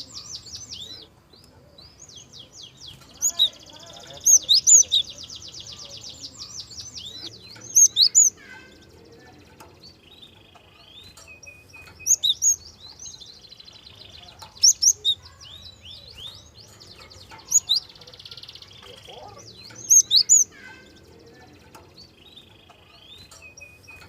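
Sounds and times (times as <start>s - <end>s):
songbird trilling and whistling: 0.0s - 1.2s, 1.8s - 24.0s
sharp bird chirps: 9.8s - 20.9s.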